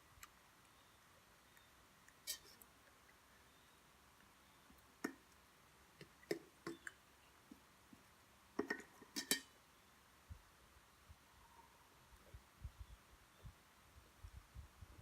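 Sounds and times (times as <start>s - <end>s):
tableware clicking and clinking: 8.6s - 9.5s.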